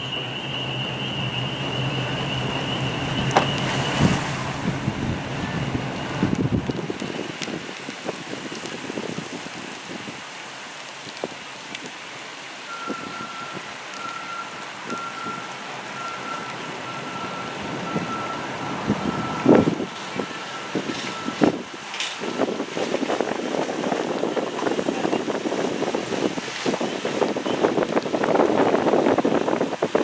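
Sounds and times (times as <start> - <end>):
faint pulsing high tone: 0.0 - 6.4
wind buffeting microphone: 0.0 - 10.2, 16.2 - 30.0
crackles and knocks: 1.2 - 7.6.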